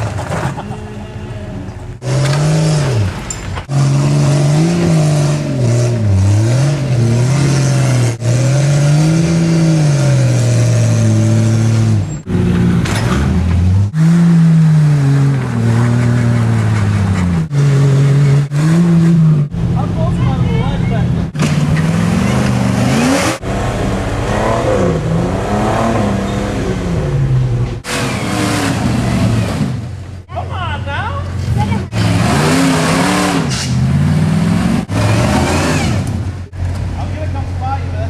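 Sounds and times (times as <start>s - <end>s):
off-road vehicle engine revving: 0.0s - 30.3s, 30.9s - 38.0s.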